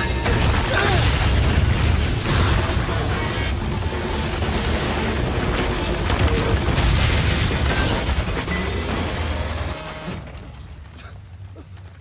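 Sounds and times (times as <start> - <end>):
dramatic soundtrack music: 0.0 - 11.5.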